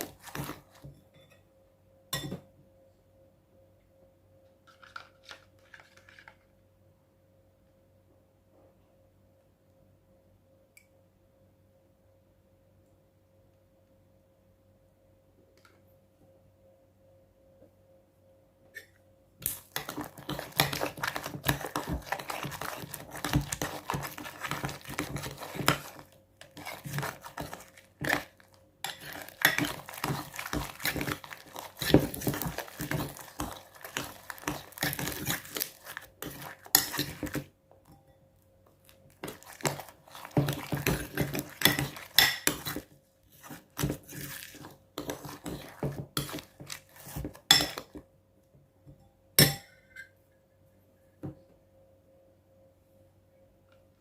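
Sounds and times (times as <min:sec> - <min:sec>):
utensil scraping in a bowl: 0:00.0 - 0:00.8, 0:19.7 - 0:37.4, 0:39.2 - 0:47.9.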